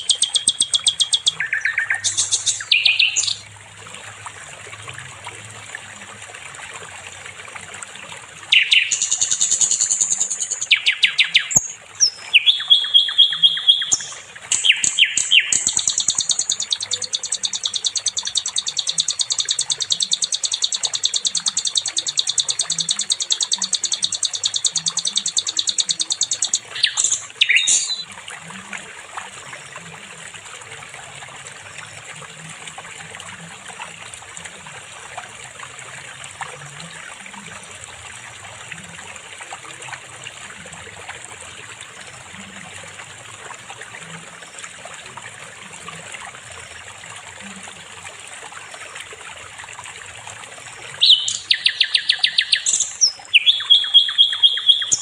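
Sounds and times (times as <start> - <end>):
flycatcher singing: 0.0 - 3.4, 8.5 - 28.0, 51.0 - 55.0.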